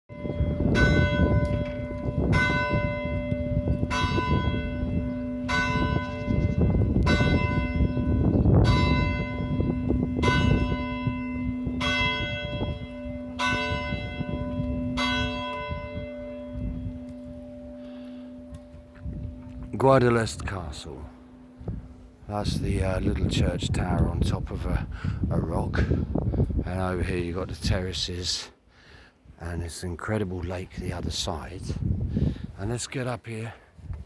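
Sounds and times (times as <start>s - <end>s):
church bell tolling: 0.1s - 23.4s.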